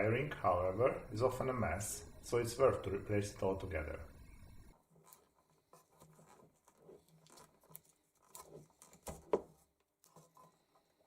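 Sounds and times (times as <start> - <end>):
small clicks and rustles: 4.7 - 11.0.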